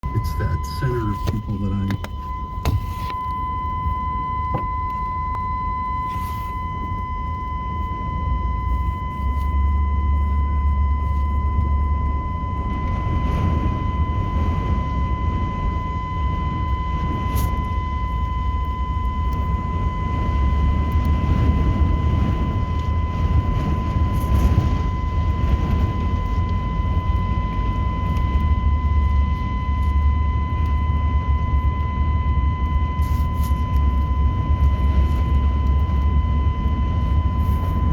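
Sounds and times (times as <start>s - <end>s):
deep rumble: 0.0s - 37.9s
steady high-pitched whine: 0.0s - 37.9s
gale wind buffeting microphone: 11.4s - 29.3s.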